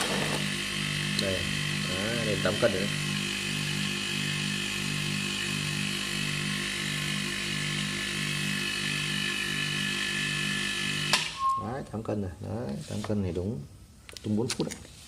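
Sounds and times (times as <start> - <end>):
air compressor humming: 0.0 - 11.5.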